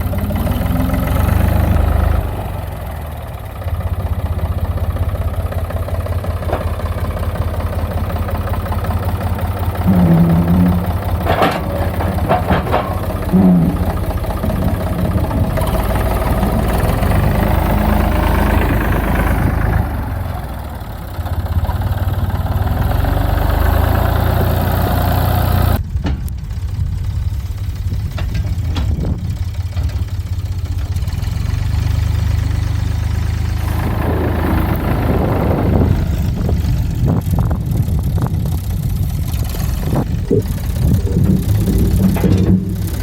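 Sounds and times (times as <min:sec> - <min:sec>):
tractor engine running: 0:00.0 - 0:43.0
knocks and clatters: 0:06.1 - 0:07.4, 0:08.5 - 0:18.8, 0:39.2 - 0:43.0.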